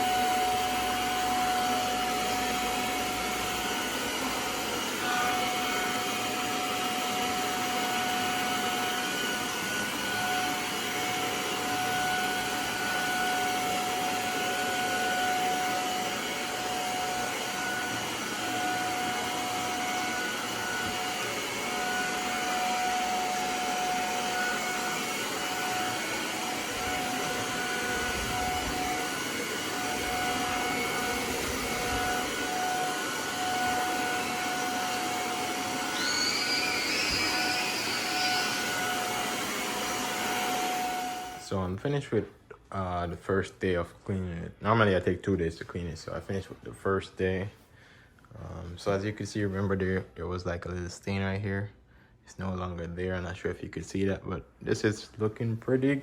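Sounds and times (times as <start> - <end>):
spot cleaner suction whine: 0.0 - 41.7.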